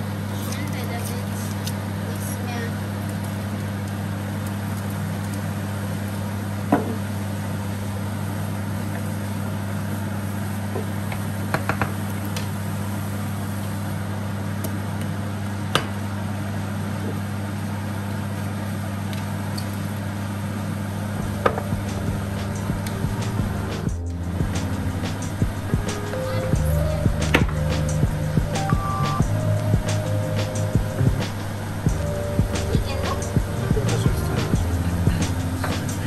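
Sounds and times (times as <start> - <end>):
low machine hum: 12.6 - 36.0.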